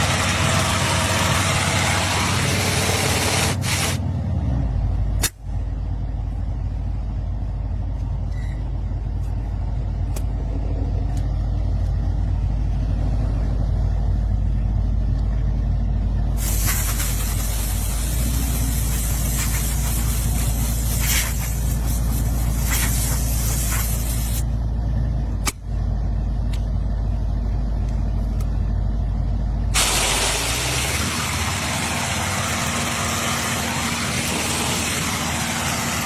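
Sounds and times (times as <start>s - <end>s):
compressed air hissing: 0.0s - 4.0s, 16.4s - 24.5s, 29.8s - 36.0s
low machine hum: 0.0s - 36.0s.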